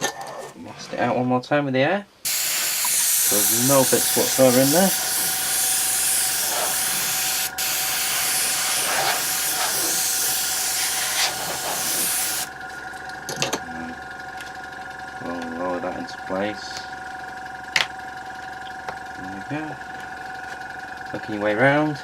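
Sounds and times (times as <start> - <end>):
air jet hissing: 2.2 - 12.5.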